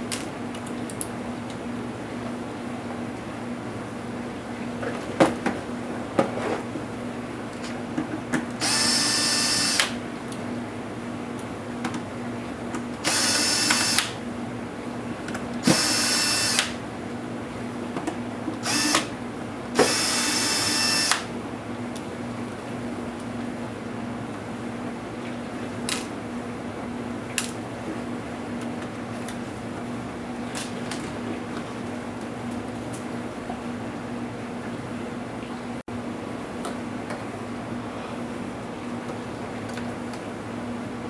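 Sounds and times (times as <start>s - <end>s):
electric screwdriver running: 8.6s - 10.0s, 13.0s - 14.2s, 15.6s - 16.8s, 18.6s - 19.1s, 19.8s - 21.3s.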